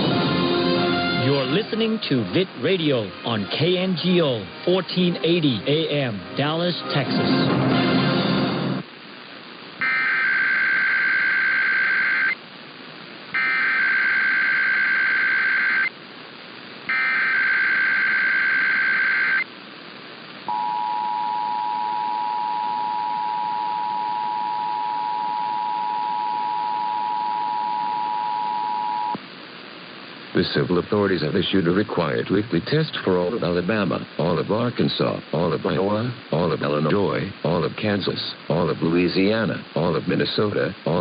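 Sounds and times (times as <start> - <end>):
warbling data tone bursts: 9.8 - 12.4, 13.3 - 15.9, 16.9 - 19.5, 20.5 - 29.2.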